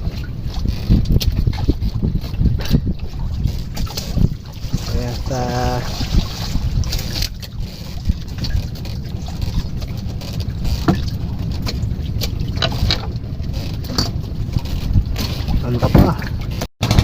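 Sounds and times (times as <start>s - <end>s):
wind buffeting microphone: 0.0s - 17.0s
sharp clicks and knocks: 8.4s - 17.0s.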